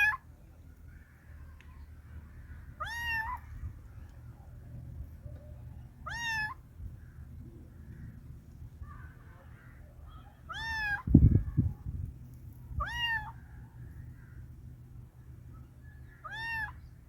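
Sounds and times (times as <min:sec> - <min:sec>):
cat meowing: 0:02.8 - 0:03.4, 0:06.0 - 0:06.6, 0:10.5 - 0:11.1, 0:12.8 - 0:13.4, 0:16.2 - 0:16.8.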